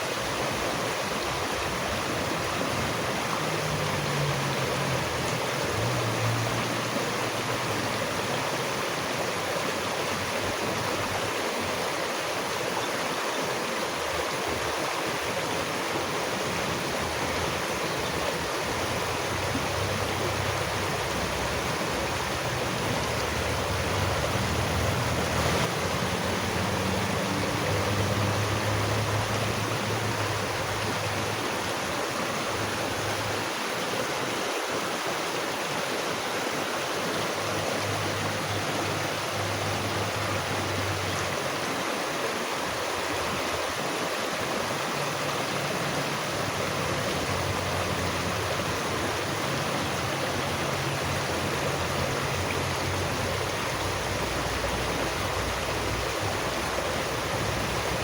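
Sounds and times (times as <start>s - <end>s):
stream flowing: 0.0s - 58.0s.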